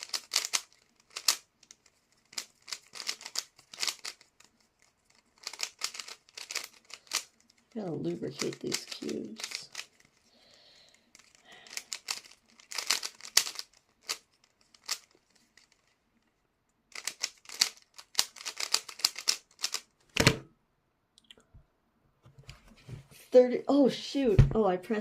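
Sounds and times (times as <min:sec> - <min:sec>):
cube layer turns clicking: 0:00.0 - 0:15.9, 0:16.9 - 0:19.9.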